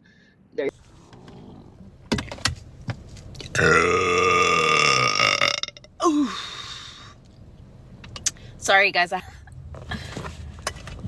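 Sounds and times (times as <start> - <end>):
woman burping: 3.5 - 6.6.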